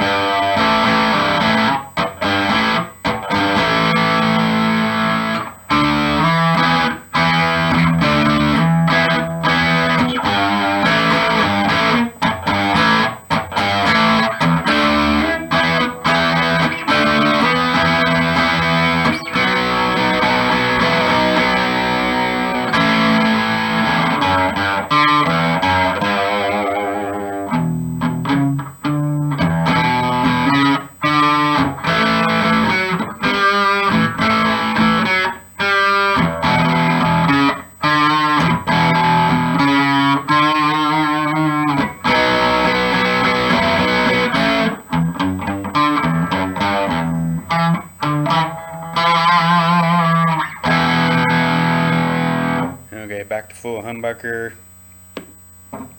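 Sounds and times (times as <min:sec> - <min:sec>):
distorted electric guitar chords and riffs: 0:00.0 - 0:55.9.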